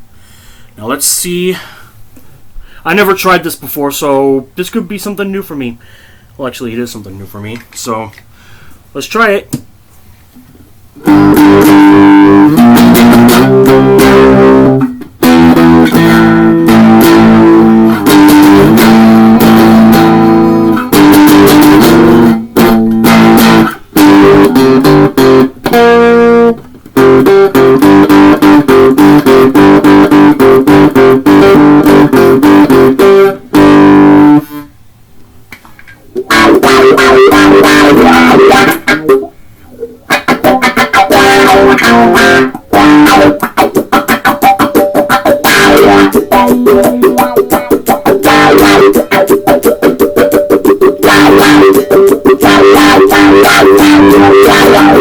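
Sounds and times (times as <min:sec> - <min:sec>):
distorted electric guitar: 0:11.0 - 0:34.8, 0:35.7 - 0:55.0.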